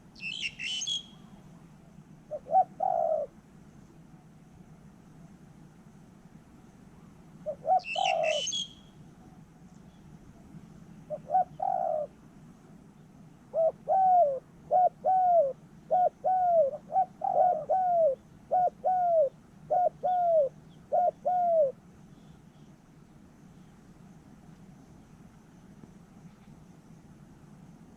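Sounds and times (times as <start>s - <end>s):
dove cooing: 2.3s - 3.4s, 7.4s - 8.8s, 11.0s - 12.2s, 13.5s - 21.8s.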